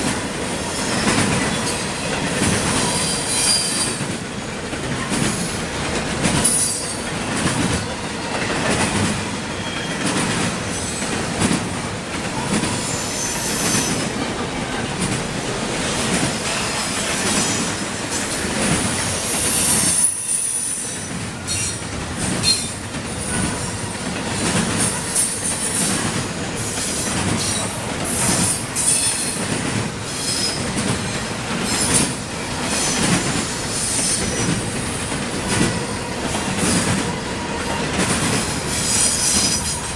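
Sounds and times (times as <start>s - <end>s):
train wheels screeching: 0.0s - 39.9s.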